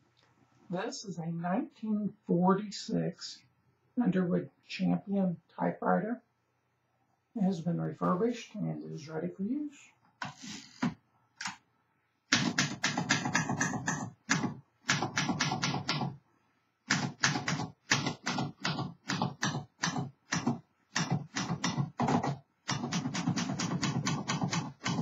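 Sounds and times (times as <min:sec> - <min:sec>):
manual typewriter typing: 0:12.3 - 0:16.1, 0:16.9 - 0:25.0.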